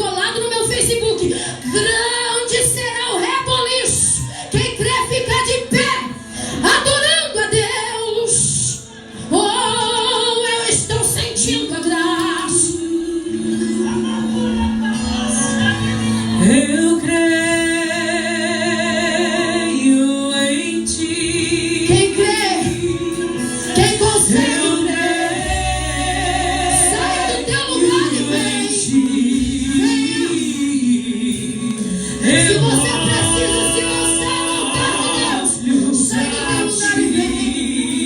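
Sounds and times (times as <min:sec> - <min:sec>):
voices singing gospel: 0:09.3 - 0:38.0
sustained instrumental accompaniment: 0:20.8 - 0:38.0.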